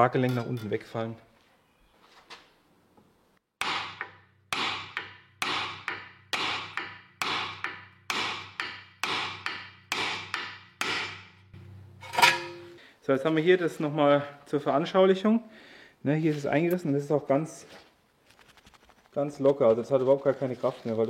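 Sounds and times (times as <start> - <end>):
hammer striking metal: 3.6 - 12.8.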